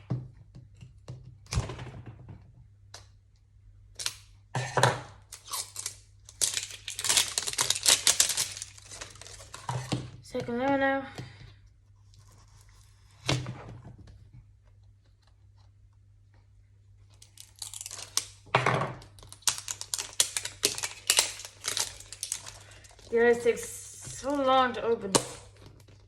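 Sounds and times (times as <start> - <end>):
wrapping tearing and crinkling: 5.2 - 10.0, 17.1 - 24.5.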